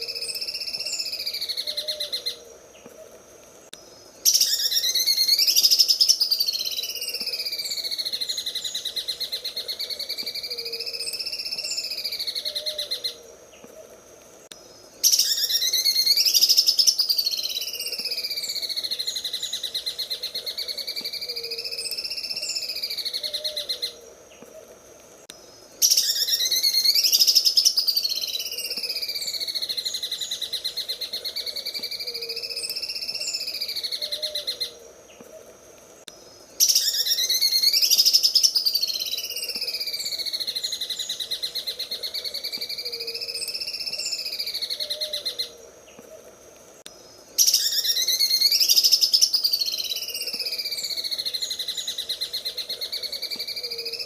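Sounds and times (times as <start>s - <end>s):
bird singing rattling trill: 4.3s - 13.1s, 15.0s - 23.9s, 25.8s - 34.7s, 36.6s - 45.5s, 47.4s - 54.0s.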